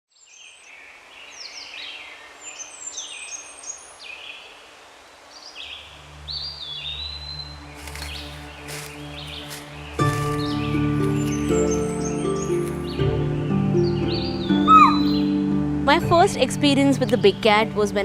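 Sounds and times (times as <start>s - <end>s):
faint outdoor hiss: 0.1s - 10.1s
birds chirping and whistling: 8.1s - 15.4s.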